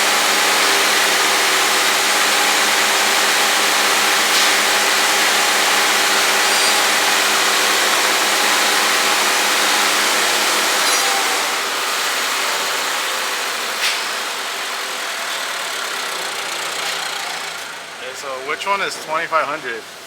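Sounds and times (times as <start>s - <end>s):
car engine idling: 11.6s - 20.0s.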